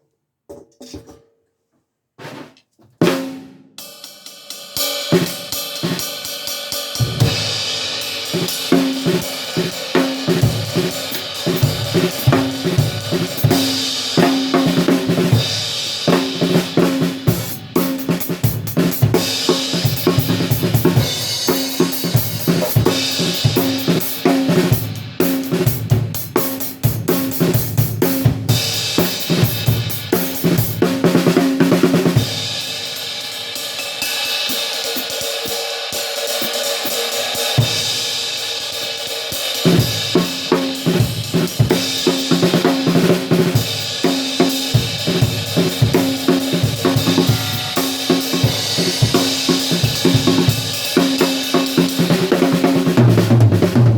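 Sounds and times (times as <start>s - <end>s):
drum kit groove: 2.2s - 53.9s
ringing cymbal hits: 46.4s - 50.9s.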